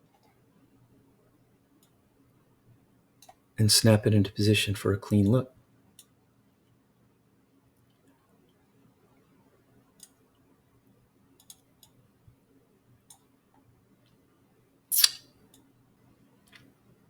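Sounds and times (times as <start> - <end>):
computer mouse clicking: 11.4 - 12.0.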